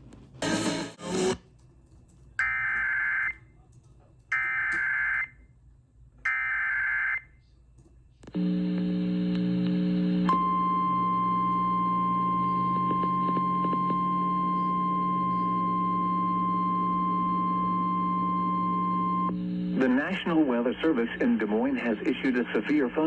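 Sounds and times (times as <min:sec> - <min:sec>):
loud steady tone: 0:00.0 - 0:05.4, 0:06.3 - 0:20.2
buzzing data tone bursts: 0:02.4 - 0:03.4, 0:04.3 - 0:05.3.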